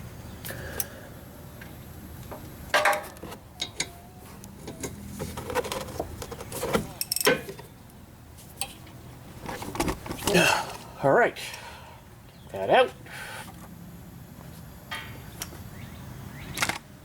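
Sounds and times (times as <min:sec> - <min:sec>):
metal tools clinking and clattering: 0:07.0 - 0:07.4.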